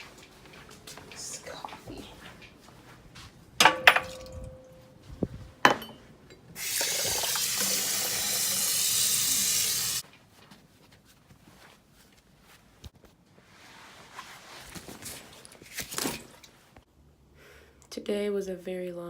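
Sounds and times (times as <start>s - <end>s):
water running from a tap: 6.6s - 10.0s.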